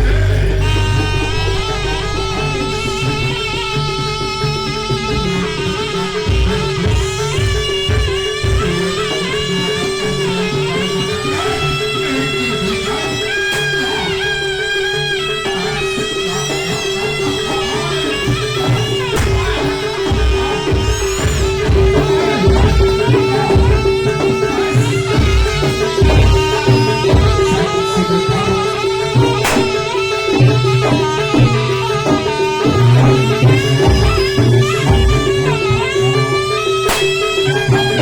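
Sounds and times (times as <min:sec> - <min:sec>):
gamelan melody: 0:00.0 - 0:08.0
drum beats: 0:00.0 - 0:14.8, 0:17.5 - 0:38.0
steady held tone: 0:00.0 - 0:38.0.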